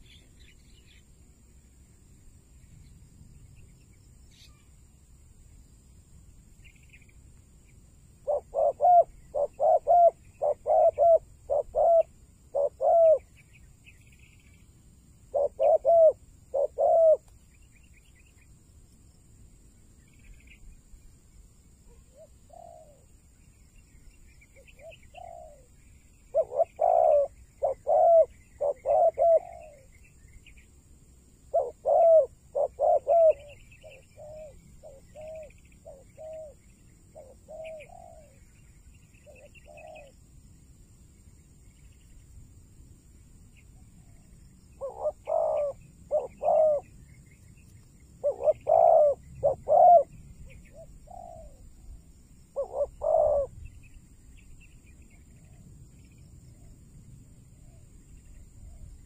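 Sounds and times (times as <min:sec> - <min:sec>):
faint small birds chirping: 0:00.0 - 0:59.0
doves cooing: 0:08.2 - 0:13.3, 0:15.3 - 0:17.3, 0:21.9 - 0:23.1, 0:24.6 - 0:30.0, 0:31.5 - 0:38.5, 0:39.2 - 0:40.2, 0:43.9 - 0:47.0, 0:48.2 - 0:51.7, 0:52.5 - 0:53.6.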